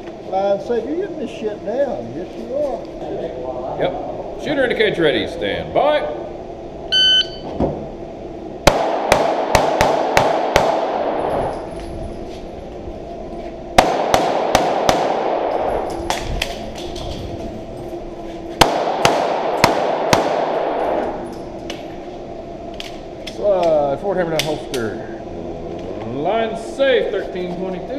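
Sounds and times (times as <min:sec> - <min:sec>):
handgun shots: 0:08.7 - 0:11.1, 0:13.8 - 0:16.6, 0:18.6 - 0:21.1.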